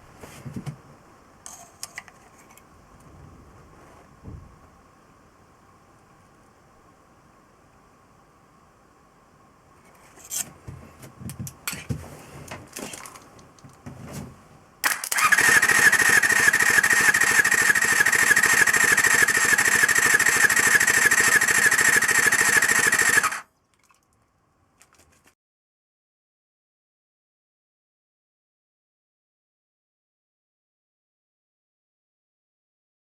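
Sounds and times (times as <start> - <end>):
motorcycle engine cranking: 14.8 - 23.4.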